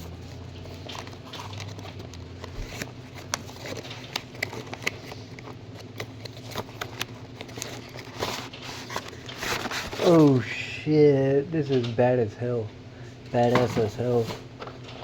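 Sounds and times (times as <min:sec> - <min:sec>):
plastic packaging clicks and rustling: 0:00.2 - 0:10.4.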